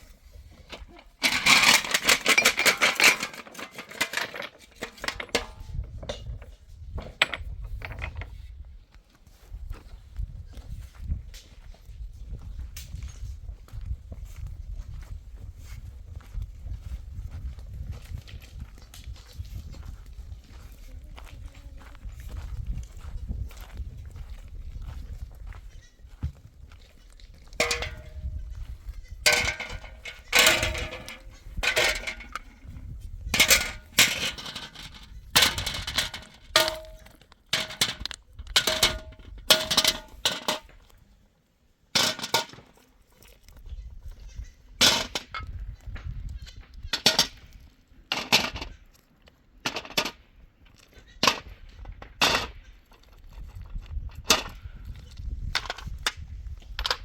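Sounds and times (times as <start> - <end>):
metallic knocks and clangs: 0.7 - 8.3, 27.6 - 28.4, 29.2 - 40.8.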